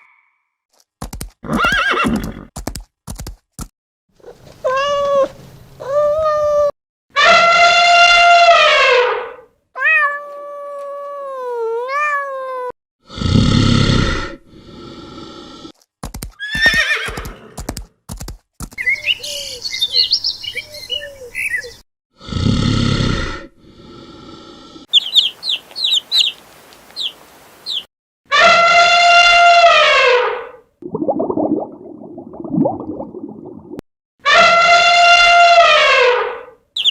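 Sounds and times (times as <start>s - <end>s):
quick run of clicks: 0.7s - 1.4s, 2.2s - 3.7s, 16.0s - 18.9s
harsh animal calls: 23.8s - 27.9s
short repeated bird chirps: 24.9s - 27.9s.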